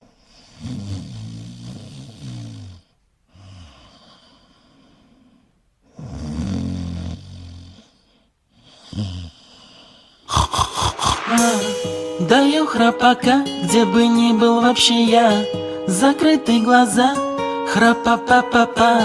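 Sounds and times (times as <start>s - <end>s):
cat snoring: 0.1s - 11.4s
quiet breath: 3.3s - 6.0s, 7.6s - 12.2s.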